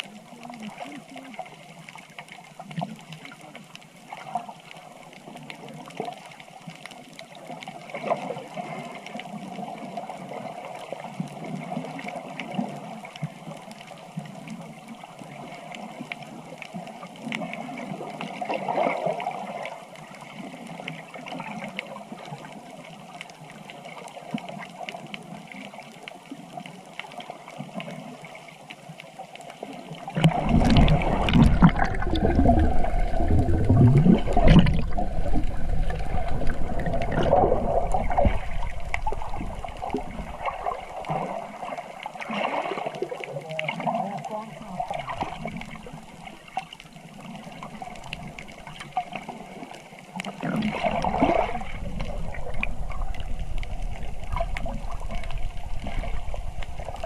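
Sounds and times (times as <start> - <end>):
water gurgling and trickling: 0.0 - 57.0
deep rush of water: 30.2 - 46.6, 50.3 - 57.0.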